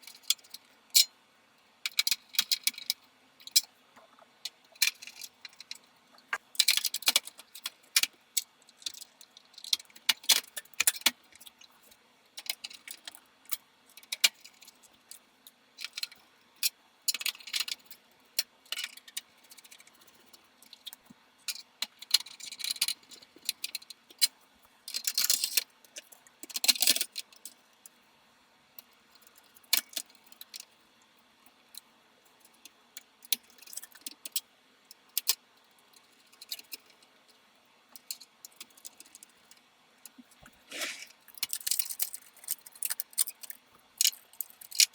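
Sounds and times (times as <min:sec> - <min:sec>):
small metal parts clinking: 0:40.8 - 0:44.9.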